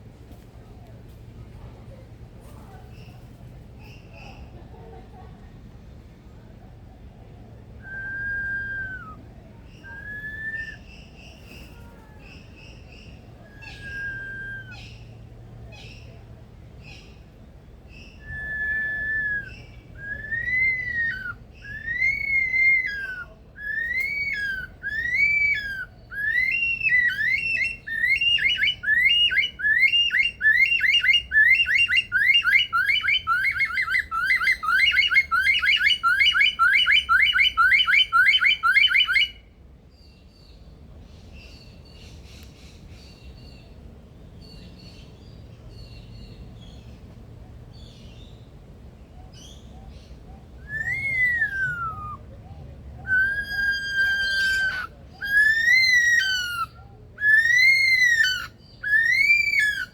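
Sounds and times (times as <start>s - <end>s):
faint chatter: 0.0s - 59.9s
lyrebird whistling song: 7.8s - 15.1s, 17.9s - 43.6s, 49.3s - 59.9s.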